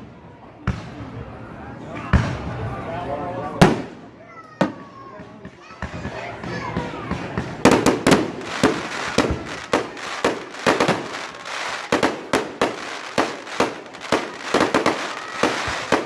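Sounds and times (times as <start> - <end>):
fireworks banging and cracking: 3.6 - 16.0.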